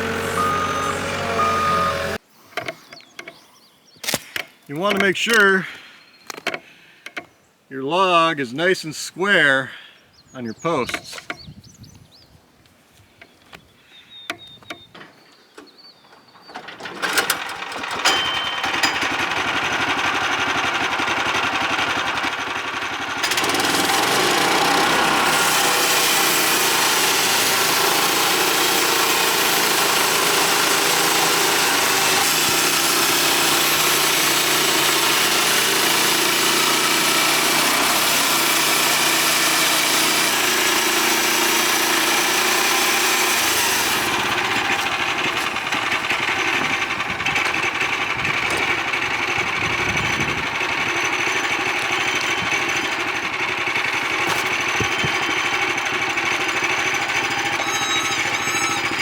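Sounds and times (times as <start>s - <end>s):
band saw blade driving: 0.0s - 2.2s, 23.3s - 49.5s, 53.6s - 59.0s
small gas engine running: 0.0s - 2.2s, 16.6s - 59.0s.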